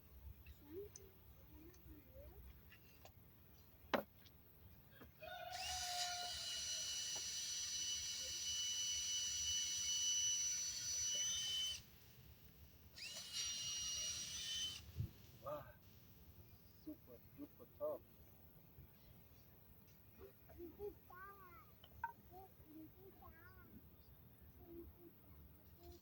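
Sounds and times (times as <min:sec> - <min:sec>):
power drill whining: 0:05.5 - 0:15.4.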